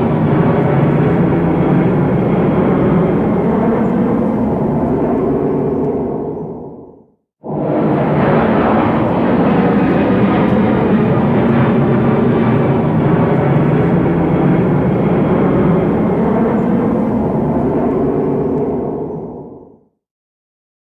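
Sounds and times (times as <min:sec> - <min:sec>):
jet plane engines roaring: 0:00.0 - 0:19.8.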